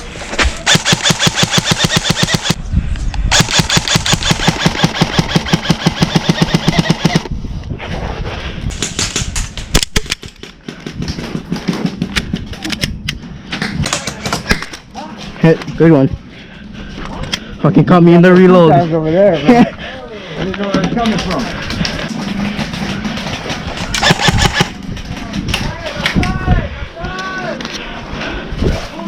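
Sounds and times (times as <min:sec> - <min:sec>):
airsoft guns firing: 0:00.6 - 0:02.6, 0:03.3 - 0:07.3, 0:21.6 - 0:24.8.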